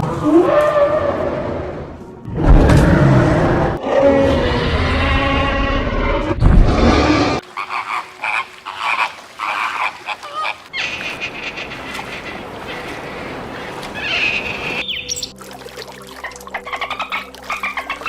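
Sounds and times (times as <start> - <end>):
chorus of animal calls: 6.9 - 15.2.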